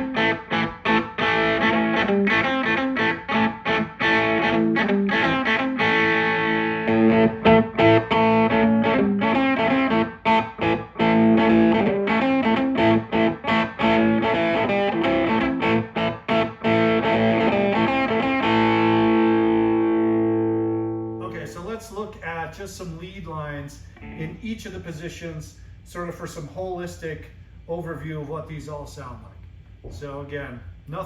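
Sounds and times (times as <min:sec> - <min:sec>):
overdriven electric guitar: 0:00.0 - 0:21.2, 0:24.0 - 0:24.4.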